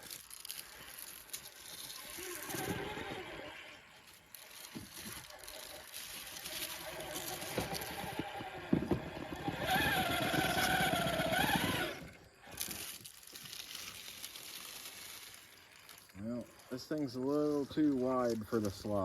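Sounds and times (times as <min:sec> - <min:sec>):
electric motor whining: 0:00.0 - 0:13.1
clicks and scraping on terrain: 0:00.0 - 0:19.0.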